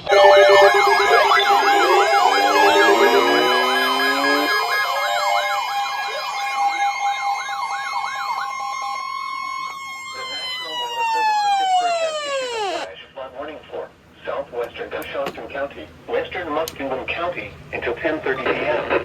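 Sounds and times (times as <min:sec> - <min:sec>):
steady warning tone: 0:00.0 - 0:12.9
warbling siren-like alert tones: 0:00.0 - 0:12.9.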